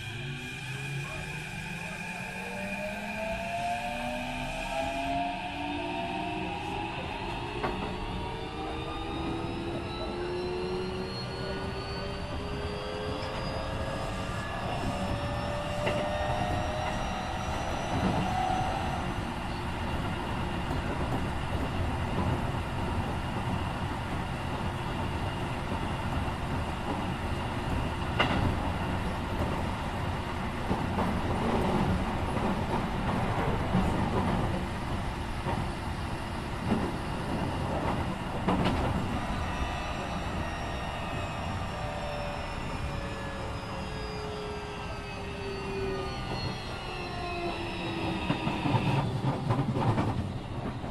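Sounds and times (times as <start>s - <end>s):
train rolling noise: 0.0s - 50.9s
electric train motor whine: 34.9s - 49.8s.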